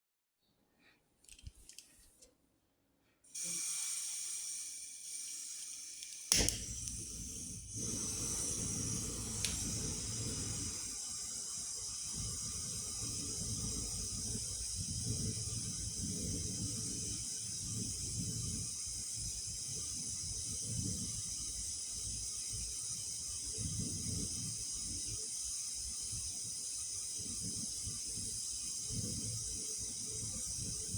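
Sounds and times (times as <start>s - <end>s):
gas hissing: 3.3s - 30.9s
burning gas rumble: 3.4s - 30.9s
lighter click: 5.6s - 7.3s, 9.3s - 10.1s.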